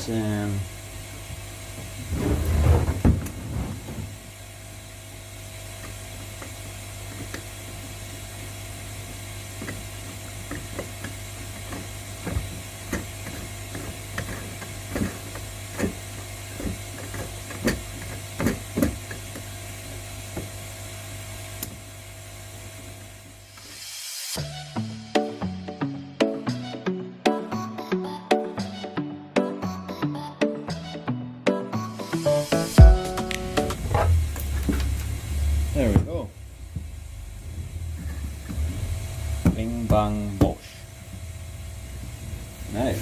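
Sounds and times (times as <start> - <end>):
bump and rustle: 2.0 - 4.2.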